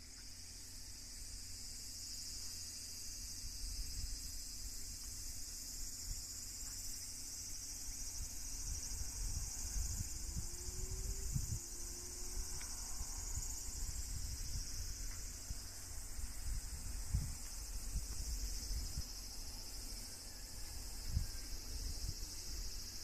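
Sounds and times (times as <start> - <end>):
insects chirring: 0.0 - 23.0
faint rising hum: 7.6 - 22.7.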